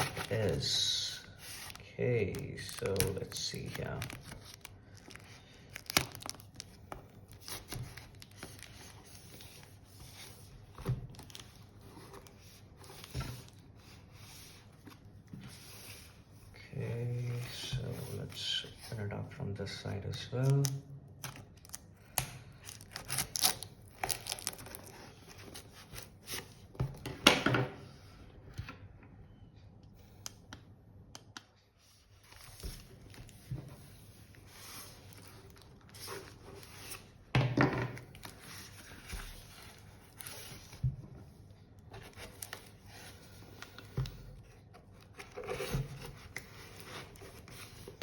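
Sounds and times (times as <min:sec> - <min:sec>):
packaging tearing and crinkling: 0:01.6 - 0:08.7, 0:22.6 - 0:25.1.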